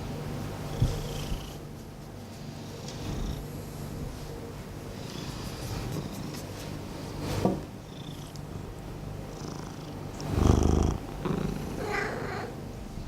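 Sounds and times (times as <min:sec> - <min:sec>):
cat purring: 0:09.2 - 0:12.6.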